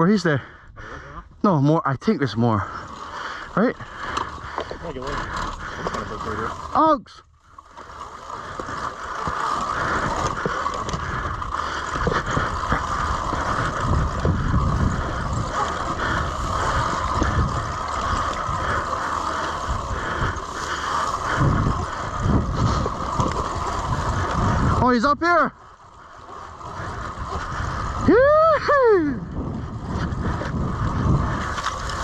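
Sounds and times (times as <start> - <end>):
electric motorbike whine: 2.7 - 32.0
wind buffeting microphone: 7.8 - 32.0.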